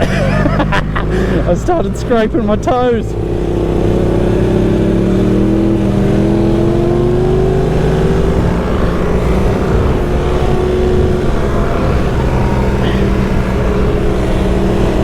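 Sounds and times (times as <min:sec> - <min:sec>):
motorcycle engine accelerating: 0:00.0 - 0:15.0
wind noise: 0:07.5 - 0:15.0.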